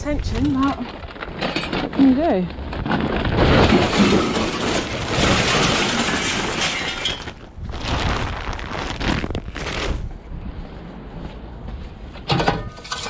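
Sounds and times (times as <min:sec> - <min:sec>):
shattering: 0:02.8 - 0:07.5
metal scrap crashing and clattering: 0:03.2 - 0:07.4, 0:12.3 - 0:13.0.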